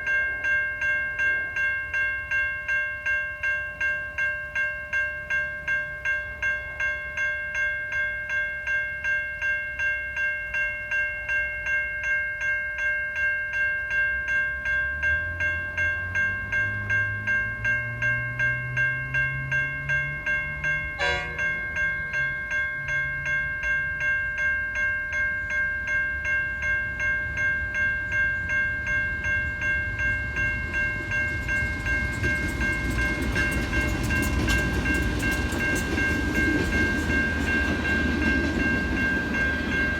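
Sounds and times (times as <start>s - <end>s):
level crossing warning bells ringing: 0.0s - 39.9s
rumble of approaching train: 12.7s - 39.9s
diesel locomotive engine: 13.8s - 39.9s.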